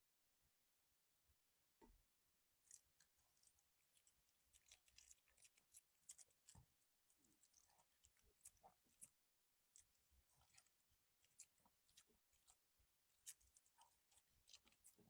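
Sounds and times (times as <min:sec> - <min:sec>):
dog chewing food: 0:02.7 - 0:15.0.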